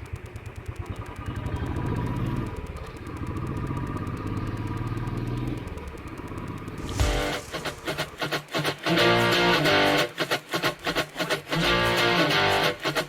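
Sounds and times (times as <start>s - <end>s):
motorcycle engine revving: 0.0s - 8.6s.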